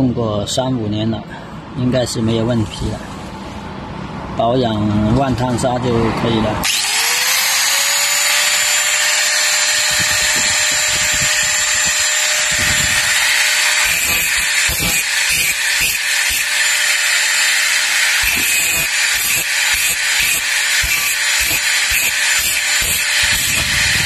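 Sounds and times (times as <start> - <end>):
angle grinder whining: 6.6 - 24.0.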